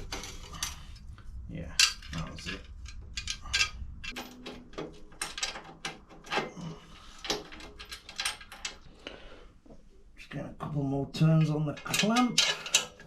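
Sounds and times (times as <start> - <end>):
hand tool clicking on metal clamp: 11.4 - 13.0.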